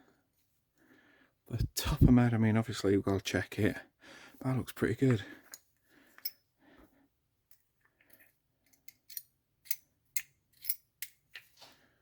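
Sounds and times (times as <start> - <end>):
metallic clicks and clinks: 5.4 - 6.4, 7.5 - 11.4.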